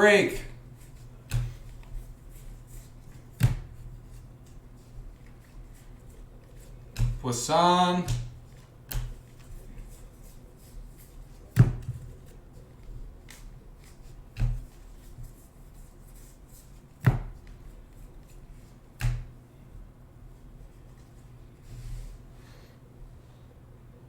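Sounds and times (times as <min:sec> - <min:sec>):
cards rustling: 0:00.3 - 0:15.4
cards tapping on table: 0:00.9 - 0:02.1, 0:03.1 - 0:04.6, 0:06.5 - 0:07.4, 0:08.0 - 0:09.5, 0:11.5 - 0:12.4, 0:13.2 - 0:15.1, 0:17.0 - 0:17.6, 0:19.0 - 0:19.3.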